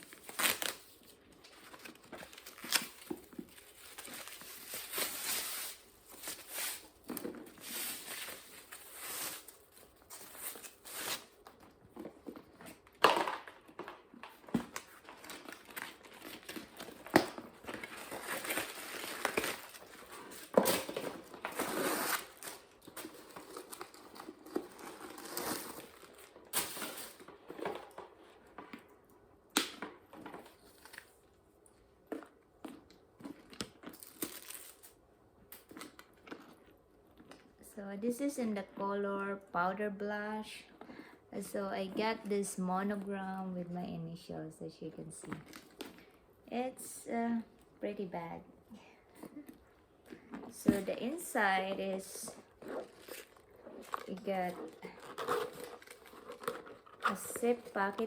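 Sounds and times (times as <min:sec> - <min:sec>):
packaging crinkling and tearing: 0:00.0 - 0:11.8, 0:13.7 - 0:27.6, 0:33.2 - 0:36.6, 0:52.3 - 0:58.0.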